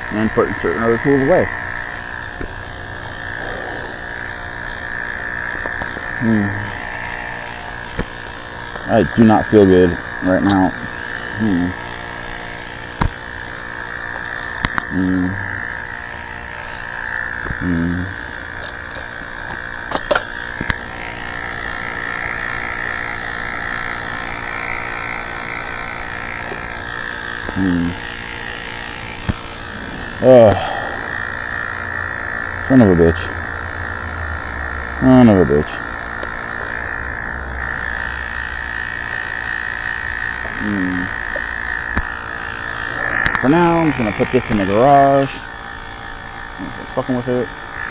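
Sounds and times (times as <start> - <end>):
sharp clicks: 0.0 - 30.2, 30.9 - 47.9
frogs chorus: 0.0 - 47.9
high-pitched hum: 0.0 - 47.9
man groaning: 6.2 - 6.8, 11.3 - 11.8, 14.9 - 15.7, 17.6 - 18.1, 29.8 - 31.2.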